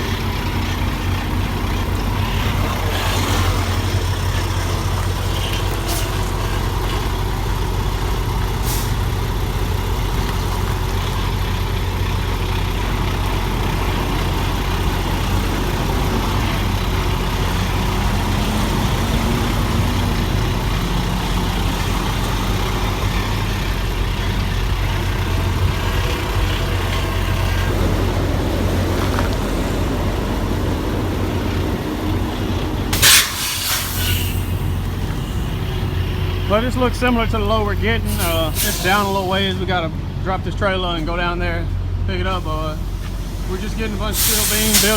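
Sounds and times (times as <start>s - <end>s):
diesel truck engine idling: 0.0s - 44.9s
burst of hiss: 33.0s - 34.7s, 38.1s - 39.2s, 42.8s - 44.9s.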